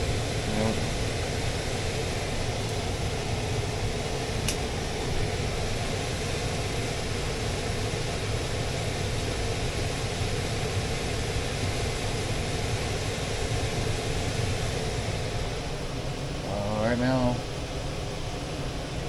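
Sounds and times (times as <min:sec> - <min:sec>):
air conditioner humming: 0:00.0 - 0:19.0.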